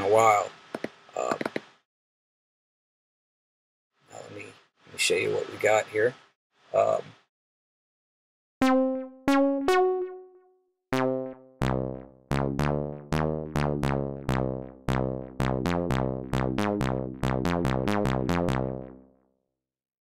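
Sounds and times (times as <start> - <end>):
synthesizer bass notes: 8.6 - 19.1
synthesizer notes: 8.6 - 19.1.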